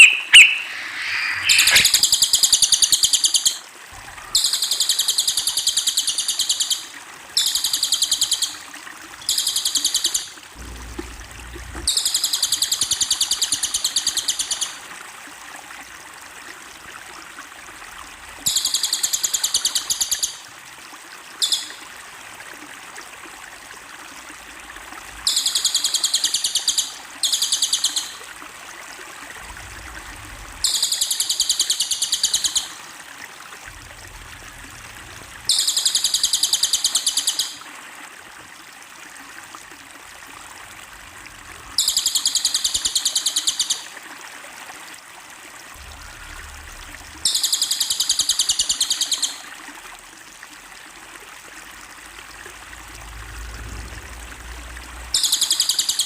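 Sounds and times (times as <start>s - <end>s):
songbird buzzy trill: 0.0s - 2.0s
running water: 0.0s - 56.0s.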